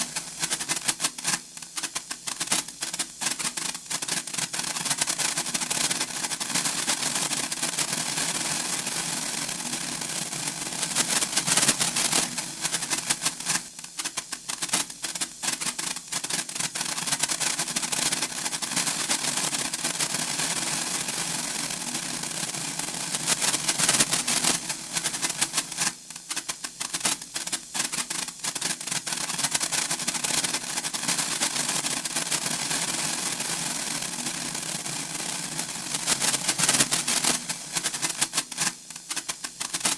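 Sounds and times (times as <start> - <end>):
sparklers crackling: 8.0 - 14.7, 20.2 - 39.9.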